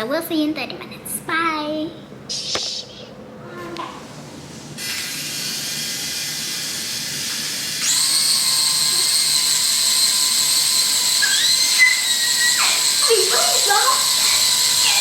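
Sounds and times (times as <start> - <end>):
toy propeller motor whining: 5.2 - 15.0.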